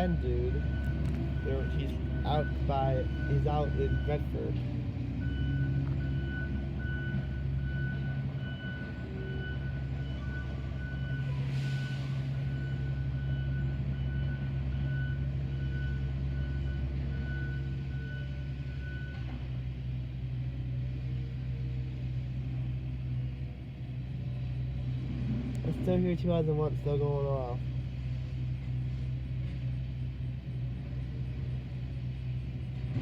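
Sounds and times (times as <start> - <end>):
distant warning sirens wailing: 0.0 - 19.6.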